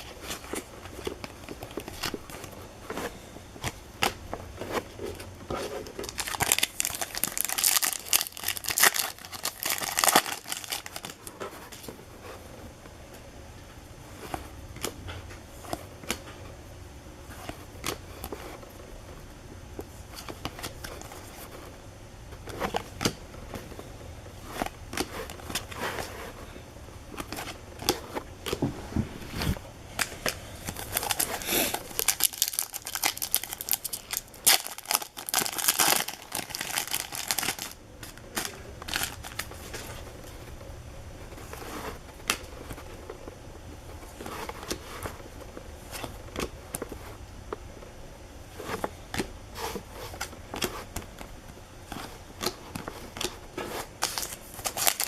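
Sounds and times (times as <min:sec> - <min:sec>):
foil wrappers tearing and crinkling: 0:06.0 - 0:11.3, 0:30.6 - 0:39.6, 0:54.0 - 0:55.0.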